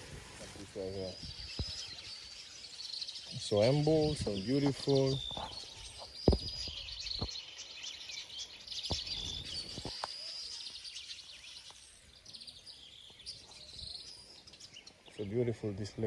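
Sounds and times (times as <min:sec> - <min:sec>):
birds chirping and singing: 0:00.0 - 0:16.0.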